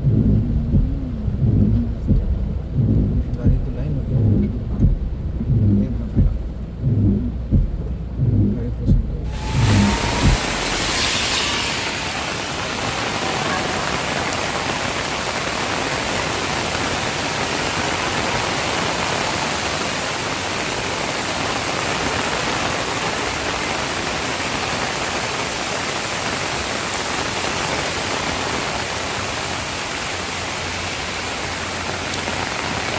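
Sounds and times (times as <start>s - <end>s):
rushing flood water: 9.3s - 32.9s.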